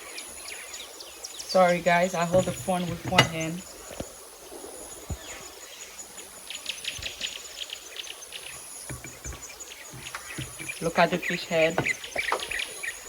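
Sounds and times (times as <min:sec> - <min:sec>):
birds chirping: 0:00.0 - 0:13.0
insect trill: 0:00.0 - 0:13.0
soft knocks: 0:02.2 - 0:04.1, 0:08.5 - 0:12.8.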